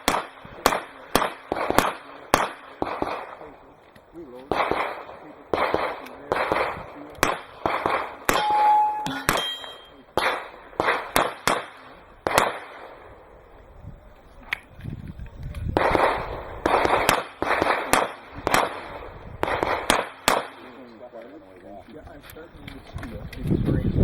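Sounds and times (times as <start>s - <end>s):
handgun shots with echo: 4.5s - 12.9s
steel target clanging: 8.3s - 10.0s.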